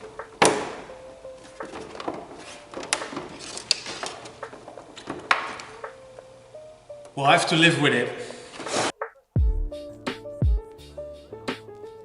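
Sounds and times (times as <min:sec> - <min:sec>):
plastic parts clicking and knocking: 0:01.4 - 0:05.8.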